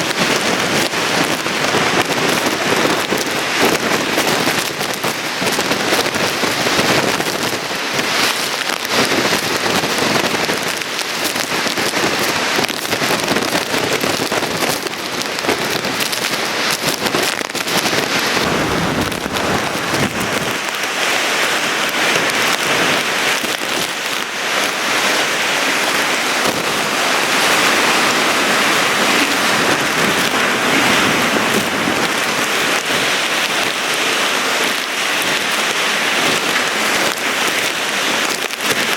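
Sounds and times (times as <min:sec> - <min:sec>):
rain pattering on surfaces: 0:00.0 - 0:38.9
heavy rain hiss: 0:15.6 - 0:38.9.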